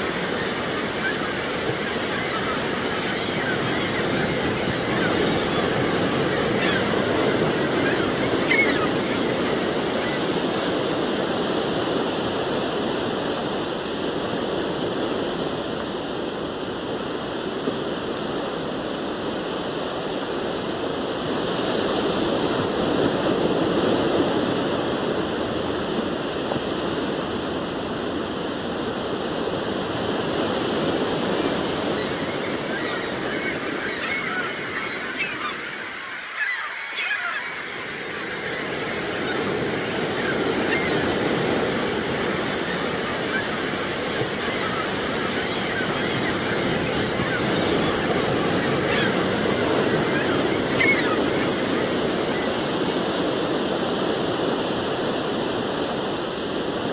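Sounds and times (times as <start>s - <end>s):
seagulls calling: 0.0s - 13.4s, 27.0s - 55.5s.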